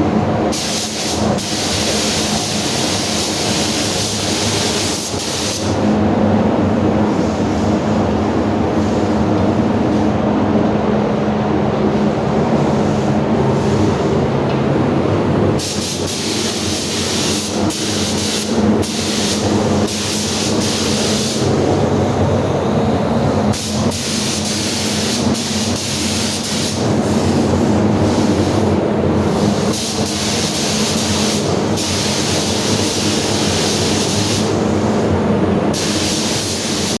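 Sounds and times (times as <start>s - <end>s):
steady machine hum: 0.0s - 37.0s
paint spray gun hissing: 0.5s - 5.9s, 15.6s - 21.7s, 23.5s - 27.4s, 28.0s - 35.1s, 35.8s - 37.0s.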